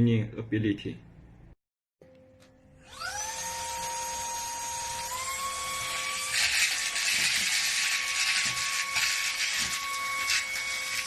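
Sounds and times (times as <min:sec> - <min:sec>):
vacuum motor high whine: 0:02.8 - 0:07.2.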